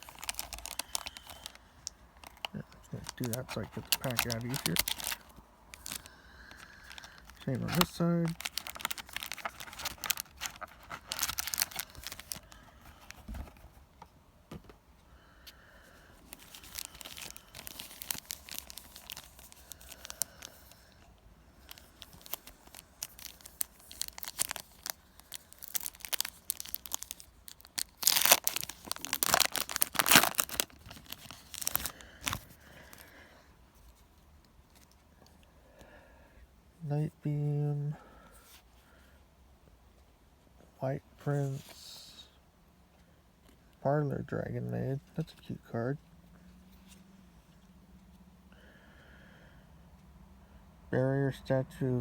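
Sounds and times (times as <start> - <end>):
packaging crinkling: 0.0 - 1.6, 2.2 - 13.8, 16.2 - 20.9, 21.6 - 33.1
packaging tearing: 0.0 - 1.6, 2.2 - 13.6, 16.3 - 20.8, 21.7 - 32.6.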